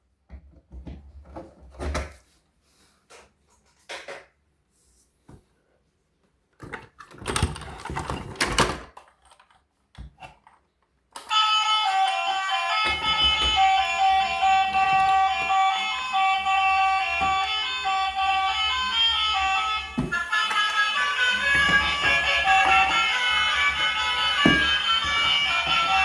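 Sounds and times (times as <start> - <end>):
objects being handled: 12.8 - 26.0.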